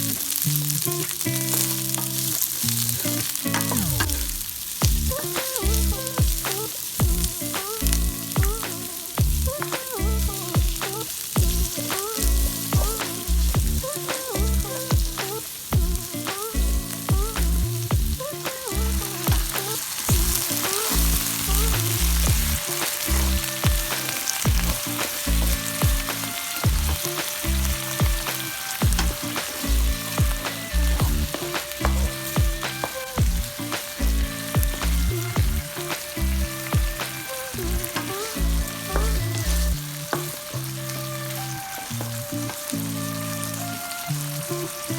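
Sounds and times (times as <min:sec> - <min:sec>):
food sizzling in a wok: 0:00.0 - 0:44.9.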